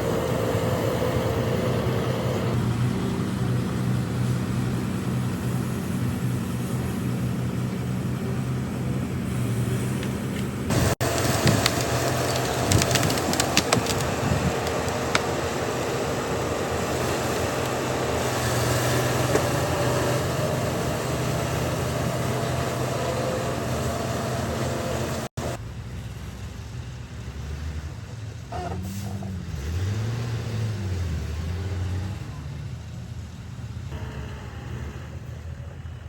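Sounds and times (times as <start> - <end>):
heavy diesel machinery drone: 0.0 - 25.8, 33.7 - 36.0
diesel engine revving: 0.0 - 36.0.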